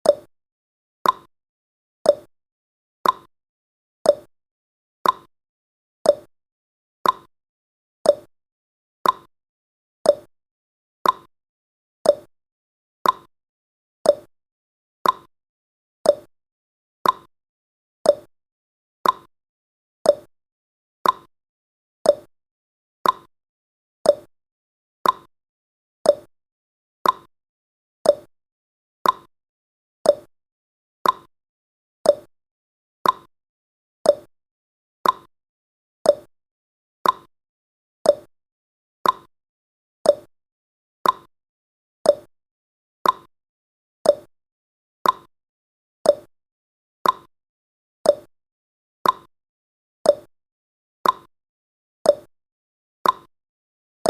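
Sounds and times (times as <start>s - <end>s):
clock ticking: 15.0s - 15.3s, 31.0s - 31.3s, 35.0s - 35.3s, 39.0s - 39.3s, 41.0s - 41.3s, 43.0s - 43.3s, 45.0s - 45.3s, 47.0s - 47.3s, 49.0s - 49.3s, 53.0s - 53.3s.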